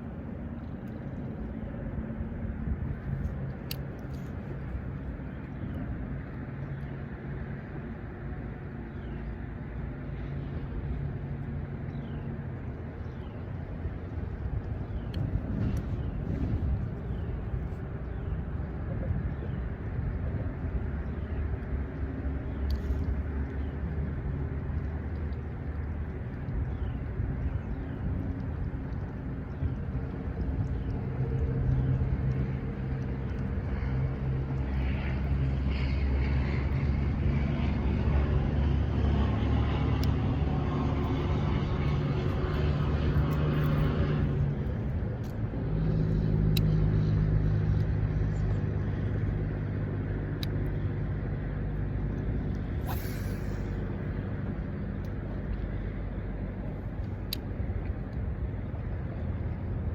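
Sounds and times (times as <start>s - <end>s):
low engine rumble: 0.0s - 59.9s.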